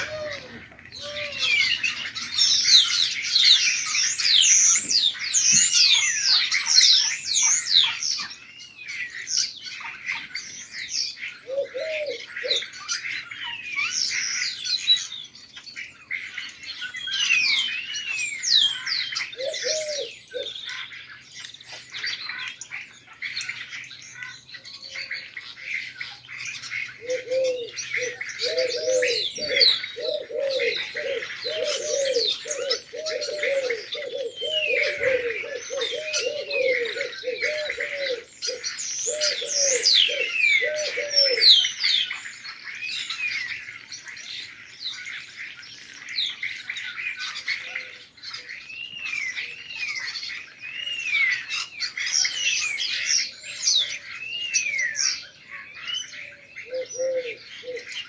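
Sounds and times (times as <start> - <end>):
pigeon cooing: 0.0 - 6.4, 11.4 - 12.8, 19.2 - 20.6, 26.9 - 41.7, 56.2 - 58.0
small birds chirping: 0.0 - 58.0.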